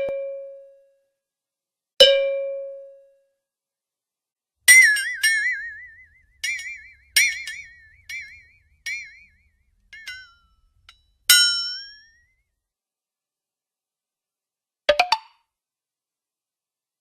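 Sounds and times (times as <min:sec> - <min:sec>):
bright struck wobbling tones: 0:04.7 - 0:12.2.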